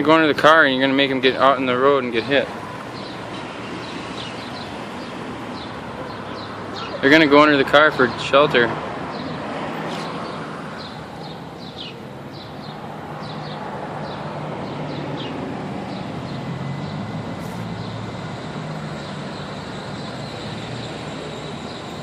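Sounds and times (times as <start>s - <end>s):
traffic rumble: 0.0s - 22.0s
baby birds chirping: 2.6s - 7.3s, 9.1s - 17.0s.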